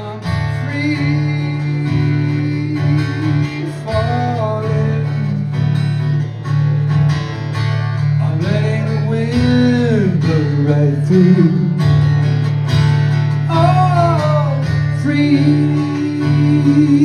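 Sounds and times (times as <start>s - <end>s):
man singing: 0.0s - 5.8s, 8.2s - 12.1s, 13.4s - 17.0s
acoustic guitar strummed: 0.0s - 17.0s.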